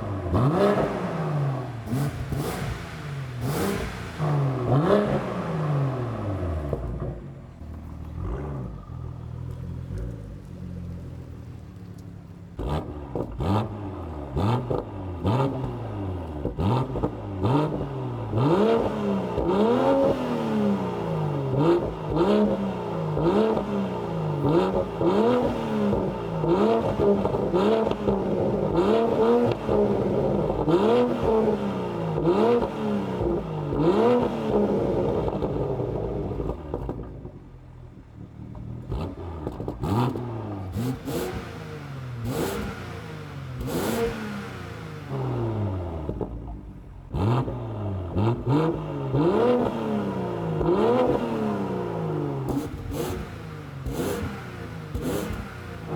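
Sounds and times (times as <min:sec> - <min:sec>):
car engine revving: 0:00.0 - 0:55.9
exhaust cracks: 0:01.8 - 0:17.9, 0:35.2 - 0:42.9.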